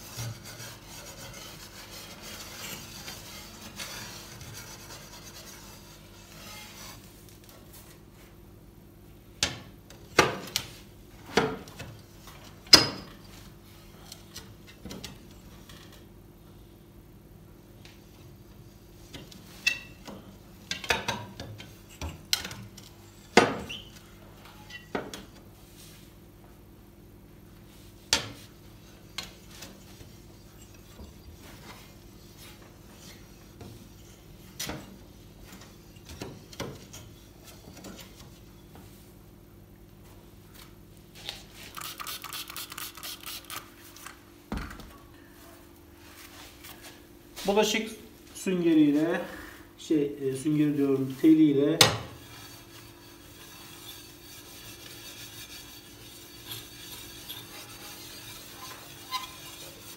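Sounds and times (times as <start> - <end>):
sponge scrubbing glass door: 52.2 - 59.9.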